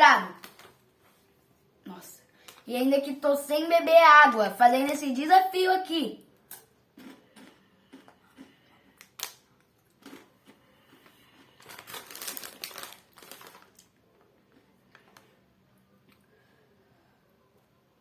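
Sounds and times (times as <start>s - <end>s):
plastic bag crinkling: 0.3s - 0.8s, 9.0s - 14.0s.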